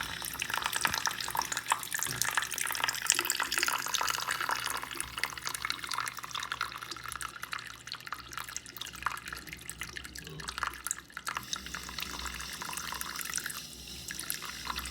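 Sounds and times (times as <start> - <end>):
water dripping and splashing: 0.0 - 11.6.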